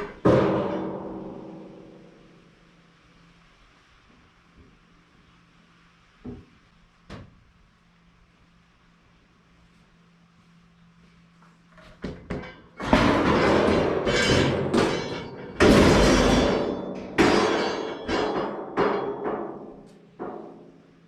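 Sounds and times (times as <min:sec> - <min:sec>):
metal panels clanging: 0:00.0 - 0:02.3, 0:12.2 - 0:21.0.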